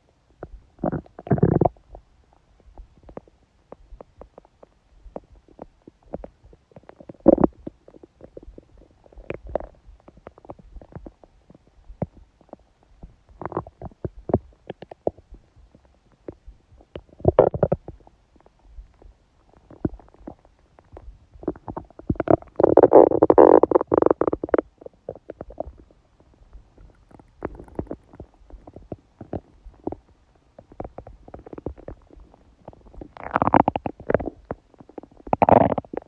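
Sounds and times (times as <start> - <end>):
stomach gurgling and rumbling: 0.0 - 36.0
small pops and bubbles: 16.3 - 25.9, 26.8 - 36.0.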